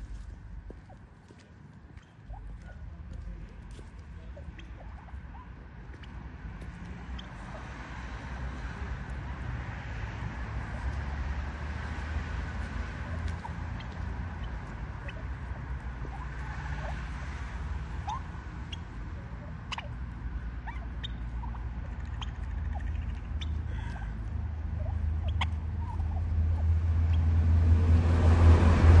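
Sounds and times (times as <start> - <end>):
birds chirping: 18.1 - 27.3.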